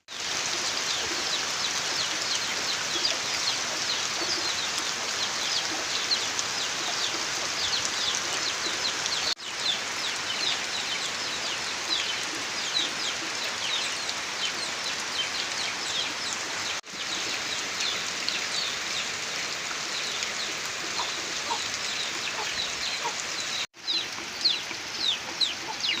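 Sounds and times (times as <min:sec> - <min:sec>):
steady rain falling: 0:00.0 - 0:26.0
birds chirping: 0:19.9 - 0:26.0
chickens clucking: 0:20.9 - 0:23.2.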